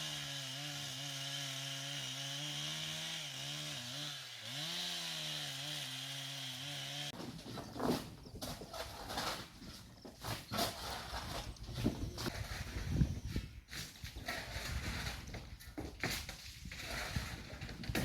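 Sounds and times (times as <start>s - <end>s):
chainsaw cutting wood: 0.0s - 9.6s, 10.2s - 18.0s.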